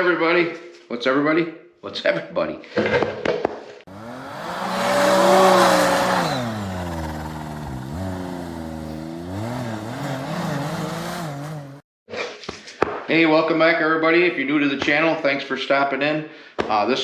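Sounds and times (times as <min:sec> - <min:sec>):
snowmobile engine revving: 0:03.9 - 0:11.8.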